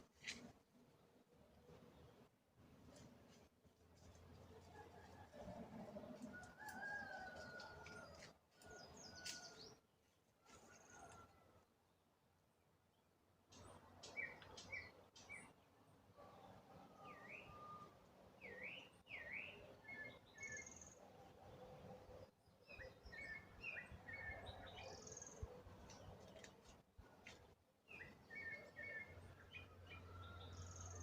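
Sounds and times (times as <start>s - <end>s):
soft outdoor hum: 0.0s - 31.0s
wild birds singing: 7.0s - 9.8s, 13.6s - 31.0s.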